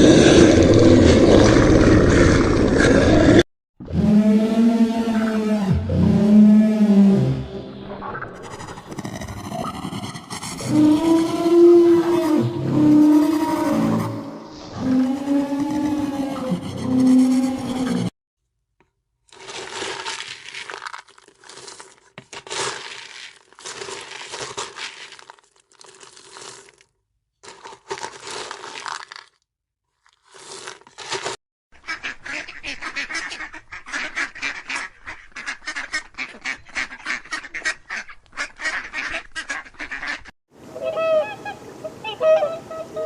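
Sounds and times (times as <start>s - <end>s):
waterfowl calling: 31.9s - 43.0s.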